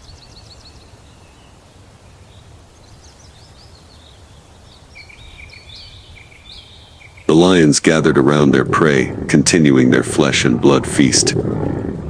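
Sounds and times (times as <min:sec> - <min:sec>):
small birds chirping: 0:00.0 - 0:12.0
low background rumble: 0:05.1 - 0:12.0.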